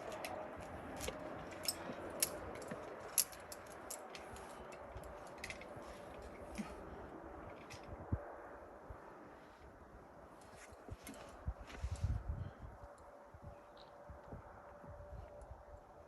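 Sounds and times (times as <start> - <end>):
metal climbing gear clinking: 0.0 - 8.0.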